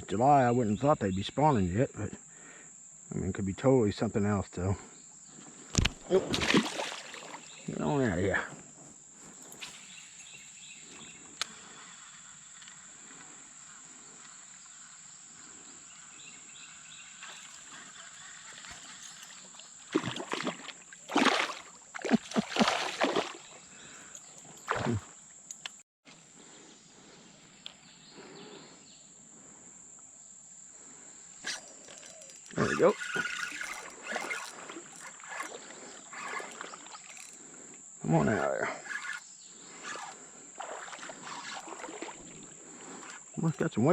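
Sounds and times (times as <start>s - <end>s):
water splashing around kayak: 5.8s - 7.7s, 17.1s - 24.0s, 39.8s - 43.3s
high-pitched insect drone: 9.2s - 25.6s, 30.2s - 43.9s.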